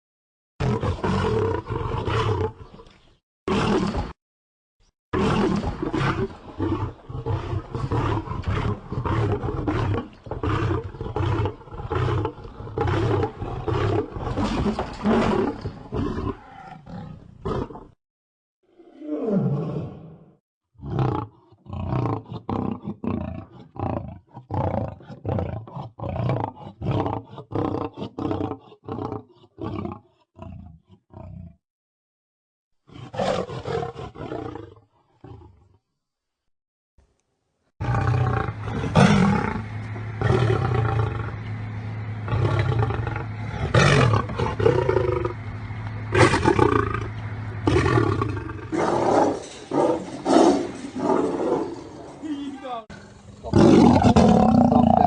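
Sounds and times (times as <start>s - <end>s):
lion roaring: 0.6s - 2.6s, 5.2s - 17.9s, 18.7s - 31.6s, 32.9s - 35.7s, 37.8s - 52.3s, 52.9s - 55.0s.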